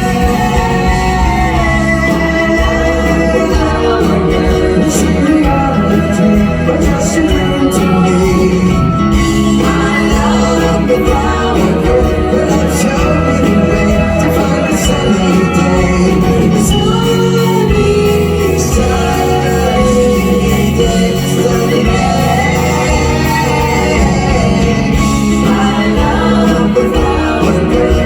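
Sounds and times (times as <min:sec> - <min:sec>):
live pop band playing: 0:00.0 - 0:28.0
person singing: 0:00.0 - 0:28.0.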